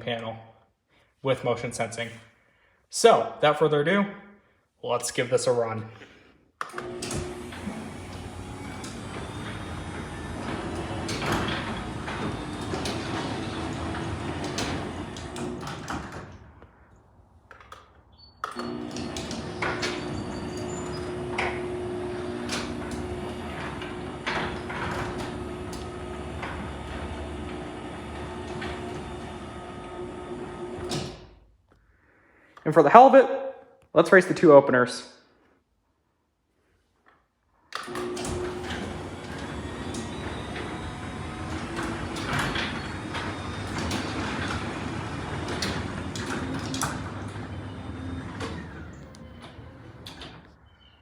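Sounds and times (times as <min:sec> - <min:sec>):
door clicks and rattles: 0:06.6 - 0:16.8, 0:17.4 - 0:31.4, 0:37.8 - 0:50.6
garage door opener humming: 0:06.6 - 0:31.5, 0:37.7 - 0:51.0.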